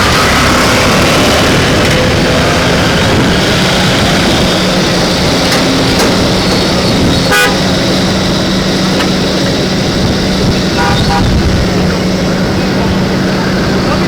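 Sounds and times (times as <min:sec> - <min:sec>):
excavator engine running: 0:00.0 - 0:14.0
horn toot: 0:00.8 - 0:09.6, 0:10.4 - 0:11.7.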